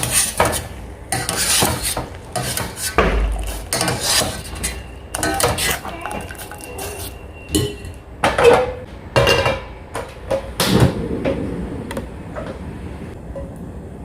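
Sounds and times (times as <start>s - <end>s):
utensils clattering on cookware: 0.0s - 10.5s.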